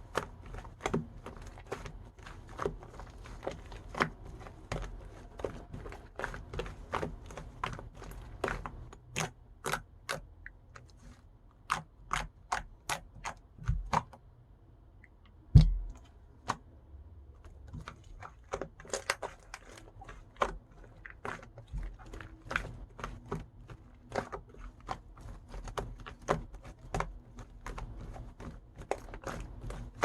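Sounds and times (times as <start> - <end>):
heavy low thumps: 15.6 - 16.0.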